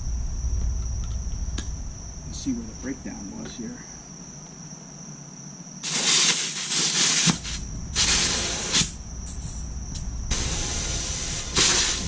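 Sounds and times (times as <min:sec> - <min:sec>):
low steady rumble: 0:00.0 - 0:04.3, 0:07.6 - 0:11.6
compressed air hissing: 0:05.8 - 0:12.0.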